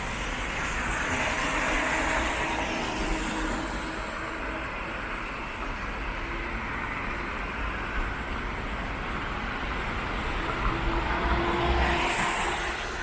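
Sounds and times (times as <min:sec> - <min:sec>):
tyres hissing on wet road: 0:08.9 - 0:13.0.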